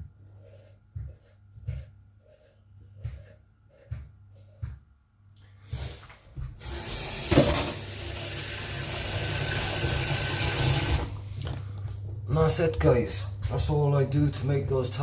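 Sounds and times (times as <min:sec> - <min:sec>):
tap water running into sink: 0:06.6 - 0:11.2.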